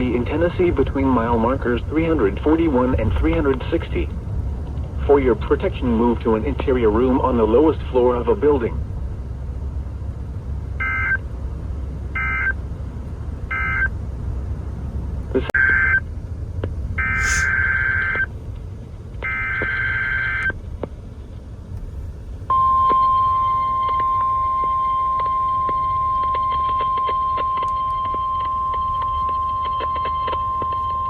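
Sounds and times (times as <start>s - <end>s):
low hum: 0.0s - 31.0s
steady alert tone: 17.0s - 17.9s
data bursts: 17.0s - 18.3s.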